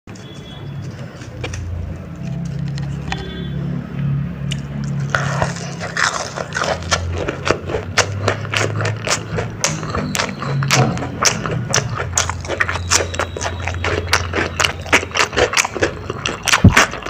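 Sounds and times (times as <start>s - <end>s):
crunchy chewing: 0.1s - 3.2s, 4.4s - 17.0s.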